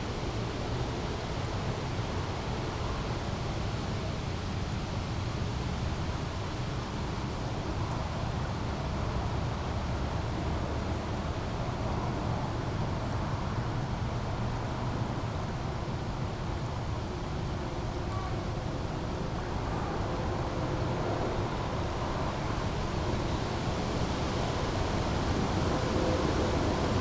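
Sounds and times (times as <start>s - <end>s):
brook flowing: 7.0s - 27.0s.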